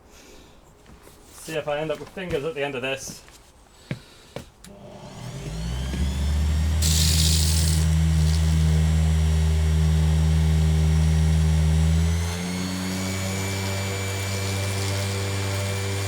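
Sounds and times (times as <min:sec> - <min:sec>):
power tool motor running: 0:04.7 - 0:16.0
sanding grind: 0:06.8 - 0:08.8, 0:12.1 - 0:16.0.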